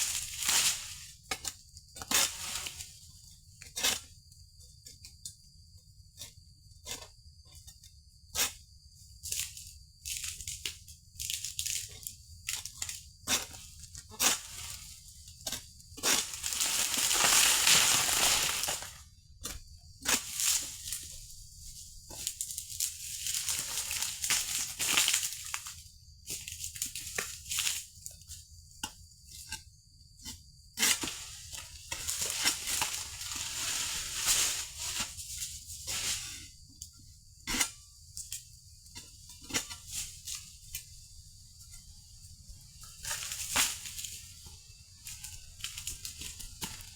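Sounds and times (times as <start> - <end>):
palm fronds cut with sickle: 0.0 - 3.0, 13.3 - 15.1, 16.0 - 19.0, 20.0 - 25.8, 30.8 - 36.5, 43.0 - 44.4
crunching tearing strokes: 16.1 - 19.0.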